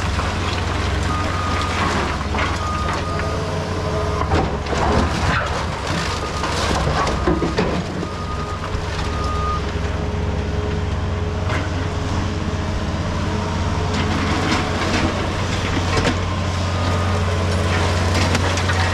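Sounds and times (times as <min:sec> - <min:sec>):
concrete debris crunching: 0:00.0 - 0:10.0, 0:11.4 - 0:18.9
heavy diesel machine running: 0:00.0 - 0:18.9.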